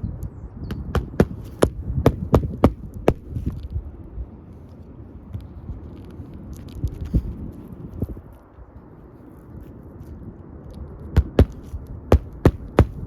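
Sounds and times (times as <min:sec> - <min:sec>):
sharp knocks: 0:00.7 - 0:03.2, 0:11.2 - 0:13.0.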